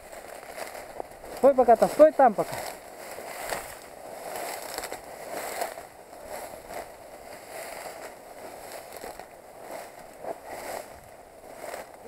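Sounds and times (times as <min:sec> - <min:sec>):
footsteps through dry reeds: 0:00.0 - 0:12.0
stalks crackling: 0:00.0 - 0:12.0.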